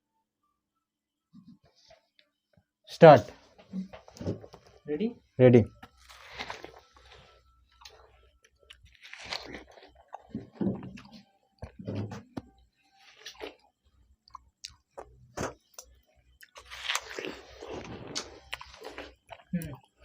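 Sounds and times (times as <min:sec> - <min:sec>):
people chewing watermelon: 0:05.8 - 0:20.0.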